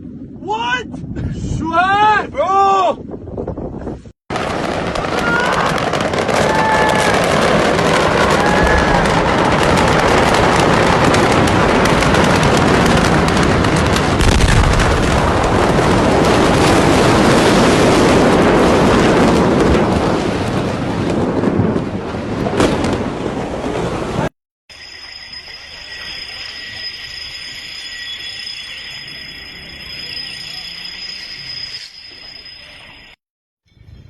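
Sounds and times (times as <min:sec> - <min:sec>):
fire crackling and popping: 0:04.3 - 0:24.3.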